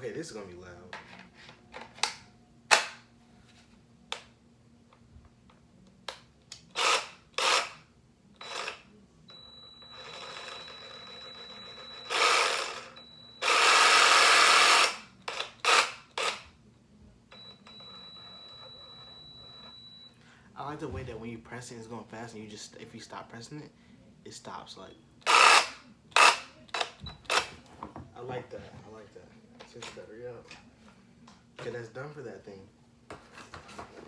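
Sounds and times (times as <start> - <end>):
cordless power tool bursts: 6.8 - 7.8, 12.0 - 16.4, 25.3 - 26.5.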